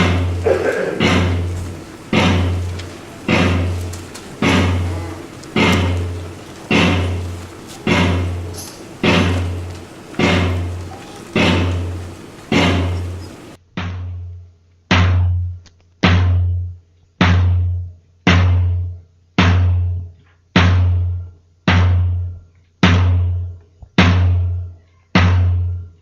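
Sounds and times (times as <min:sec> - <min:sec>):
deep drum beat: 0:00.0 - 0:13.6.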